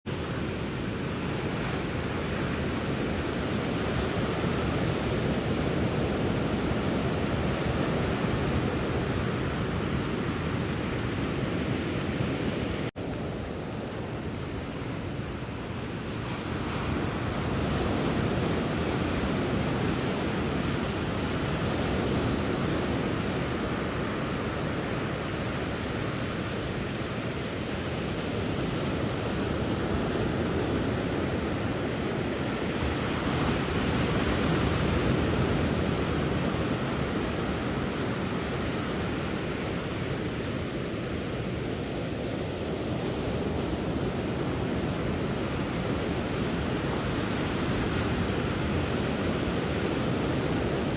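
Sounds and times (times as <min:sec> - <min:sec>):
surf breaking on a beach: 0:00.1 - 0:50.9
wind on the microphone: 0:00.1 - 0:50.9.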